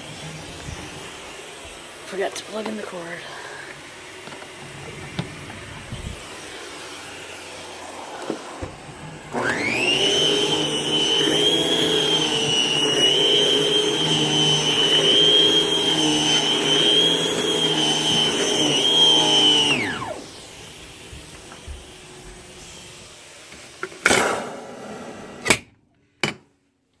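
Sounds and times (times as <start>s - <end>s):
central vacuum high whine: 0.0s - 23.6s.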